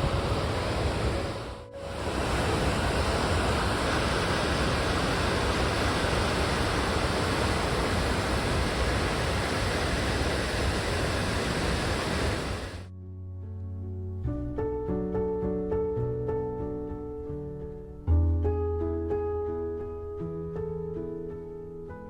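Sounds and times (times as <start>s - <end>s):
waterfall rushing: 0.0s - 12.8s
plucked piano-like background music: 12.9s - 22.0s.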